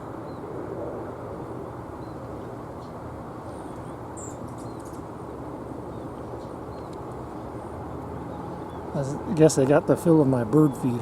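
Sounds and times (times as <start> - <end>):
low background rumble: 0.0 - 11.0
finches chirping: 2.0 - 5.1, 5.7 - 11.0.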